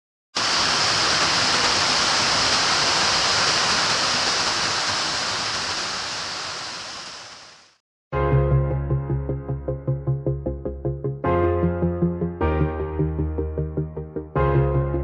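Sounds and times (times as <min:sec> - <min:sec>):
waterfall rushing: 0:00.4 - 0:07.8.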